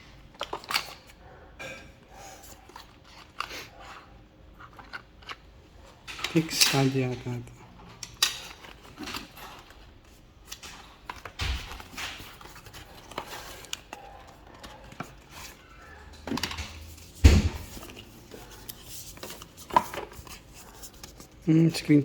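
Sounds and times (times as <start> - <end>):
packaging rustling: 4.6 - 22.0
dull thump: 17.2 - 17.8.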